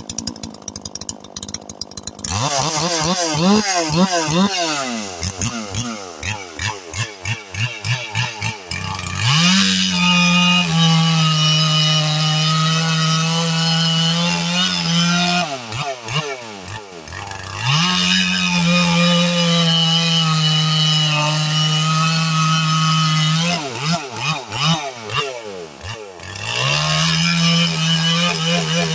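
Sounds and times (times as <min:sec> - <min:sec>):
chainsaw idling and cutting log: 0:00.0 - 0:28.9.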